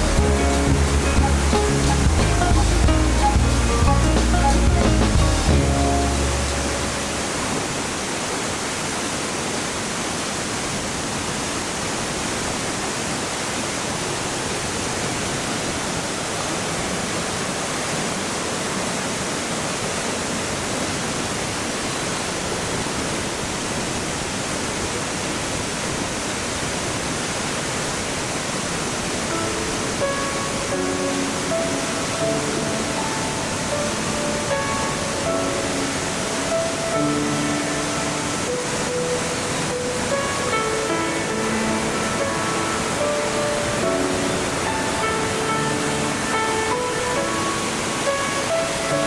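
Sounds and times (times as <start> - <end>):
background music: 0.0 - 7.8, 29.3 - 49.0
waterfall rushing: 0.0 - 49.0.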